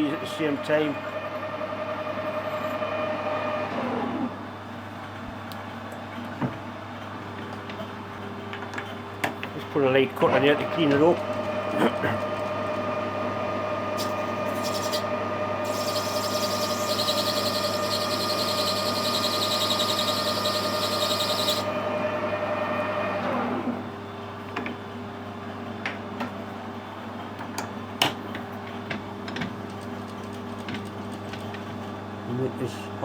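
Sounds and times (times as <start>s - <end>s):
lathe motor whine: 10.2s - 23.9s.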